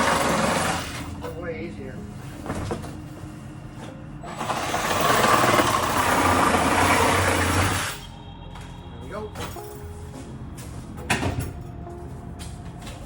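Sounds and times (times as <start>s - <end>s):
reciprocating saw cutting cardboard: 0.0s - 1.0s.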